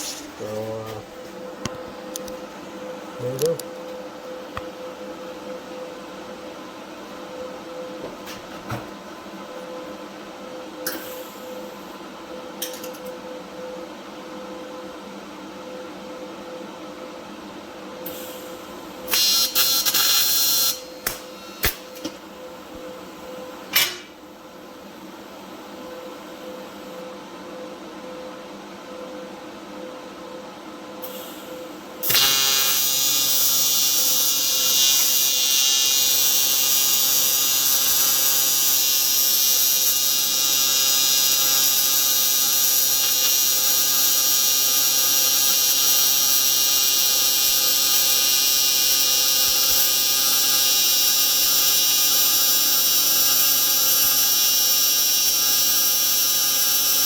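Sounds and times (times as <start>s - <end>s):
welding arc buzzing: 0.0s - 3.7s, 19.1s - 22.2s, 32.0s - 57.0s.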